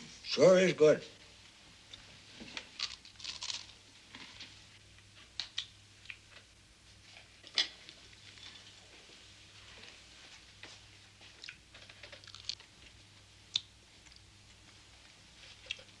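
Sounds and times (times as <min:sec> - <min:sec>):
people chewing: 0:11.2 - 0:12.7, 0:15.4 - 0:16.0.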